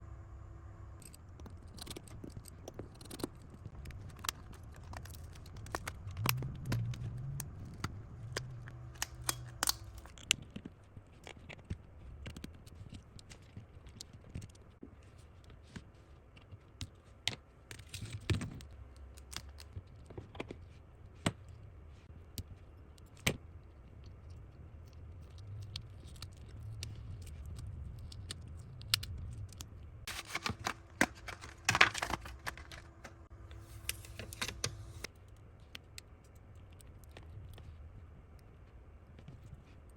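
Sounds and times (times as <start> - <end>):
low handling rumble: 3.7 - 10.1.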